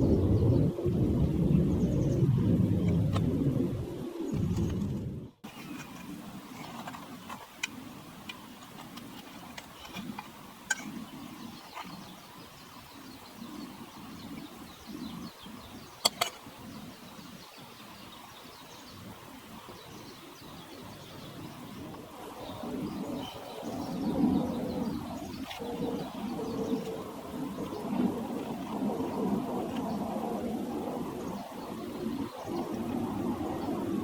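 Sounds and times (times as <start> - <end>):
faint bird chirps: 10.8 - 28.0.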